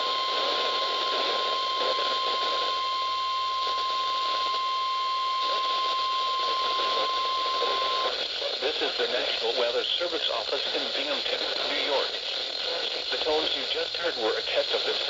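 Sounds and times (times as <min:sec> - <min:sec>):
steady alarm tone: 0:00.0 - 0:08.2
radio static: 0:00.0 - 0:15.0.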